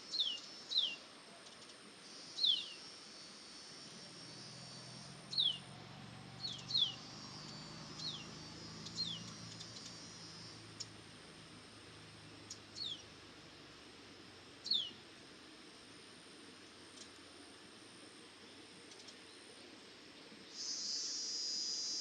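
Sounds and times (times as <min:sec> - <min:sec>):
faint high chirping: 0:00.0 - 0:11.0, 0:14.6 - 0:15.0, 0:20.4 - 0:22.0.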